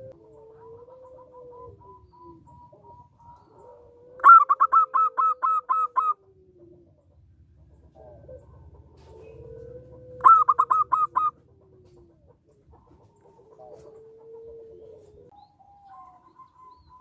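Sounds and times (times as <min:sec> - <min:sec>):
low drawn-out dove coo: 0:00.0 - 0:17.0
dove quick cooing notes: 0:07.8 - 0:12.3, 0:12.9 - 0:15.3.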